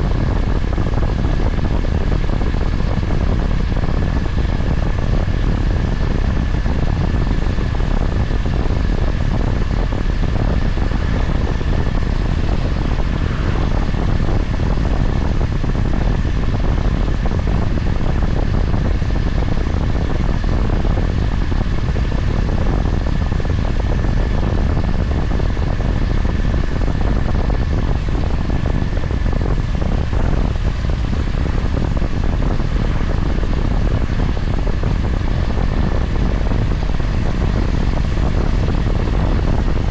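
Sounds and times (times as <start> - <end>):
wind rushing over microphone: 0.0 - 39.9
motorcycle engine cruising: 7.6 - 14.9.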